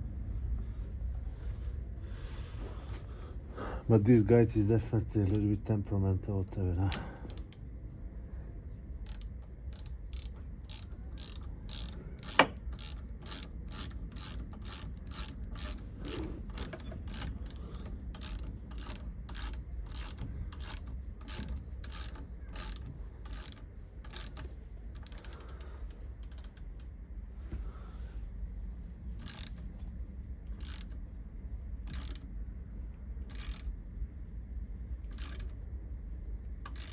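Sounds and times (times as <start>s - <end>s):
ratchet wrench clicking: 6.9s - 7.6s, 9.0s - 26.9s, 29.2s - 29.7s, 30.5s - 31.0s, 31.8s - 32.3s, 33.3s - 33.7s, 35.1s - 35.6s, 36.6s - 36.9s.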